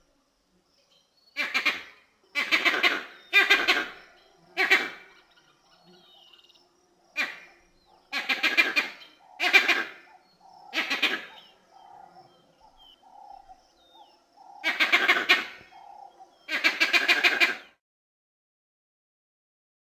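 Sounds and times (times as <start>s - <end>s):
faint chirps: 0.0s - 17.8s
monkey calling: 1.4s - 6.5s, 7.1s - 17.8s.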